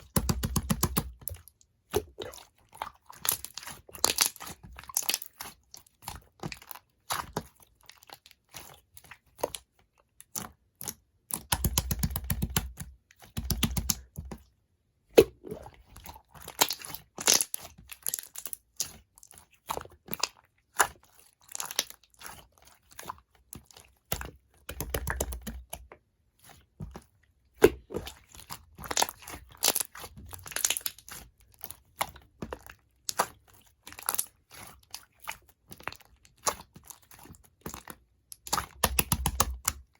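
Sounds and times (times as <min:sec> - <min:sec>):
slime clicking and crackling: 0:03.2 - 0:07.4, 0:10.2 - 0:14.0, 0:16.4 - 0:19.1, 0:27.6 - 0:39.8.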